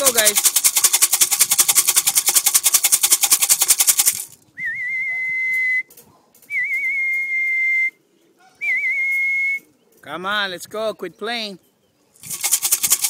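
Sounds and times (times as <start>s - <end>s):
fast sharp rattle: 0.0s - 4.4s, 12.2s - 13.0s.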